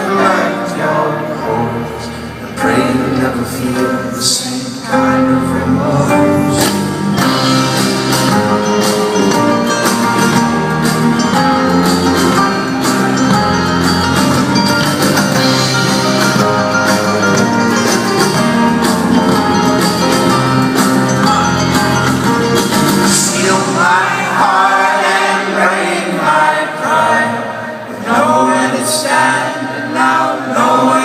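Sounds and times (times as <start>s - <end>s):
guitar over steady beat: 6.2s - 23.8s.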